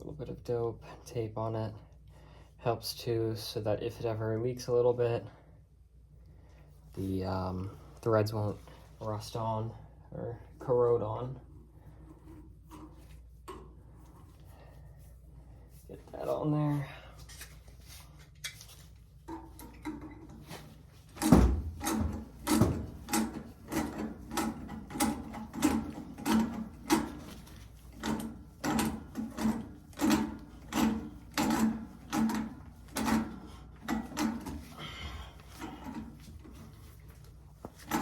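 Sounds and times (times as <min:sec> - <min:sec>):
wrench scraping metal pipe fitting: 0:21.2 - 0:34.8.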